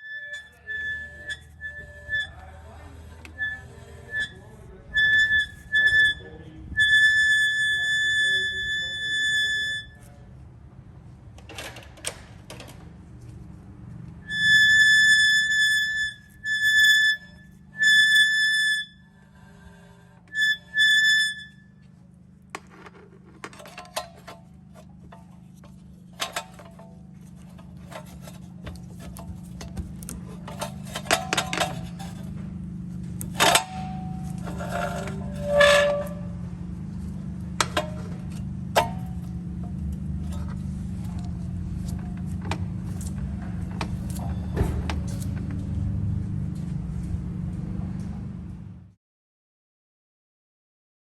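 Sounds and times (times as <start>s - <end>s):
car engine droning: 36.1s - 48.9s.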